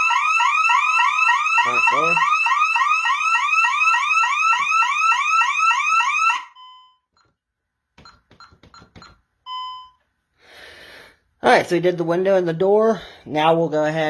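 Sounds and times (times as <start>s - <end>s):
alarm siren rising sweeps: 0.0s - 6.7s
short beep: 6.6s - 7.3s, 8.0s - 10.0s.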